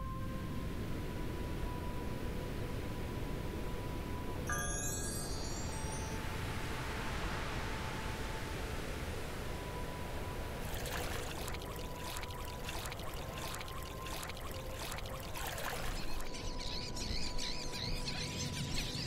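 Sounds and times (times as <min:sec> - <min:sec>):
faint steady tone: 0:00.0 - 0:17.7
water trickling and splashing: 0:10.5 - 0:16.6
bird-like chirps: 0:10.8 - 0:19.0.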